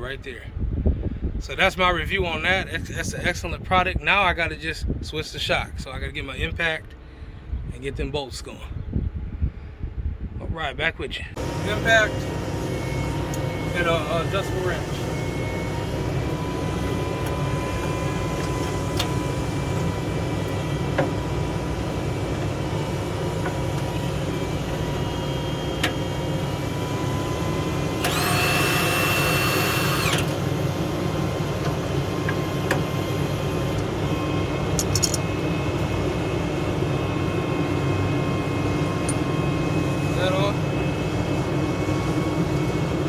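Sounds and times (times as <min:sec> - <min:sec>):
low engine rumble: 0:11.1 - 0:43.0
impact wrench whine: 0:11.4 - 0:35.4.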